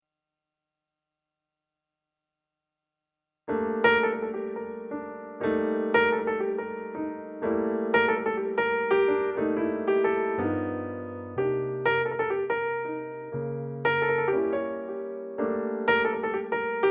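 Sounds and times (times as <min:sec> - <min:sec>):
piano music: 0:03.5 - 0:16.9.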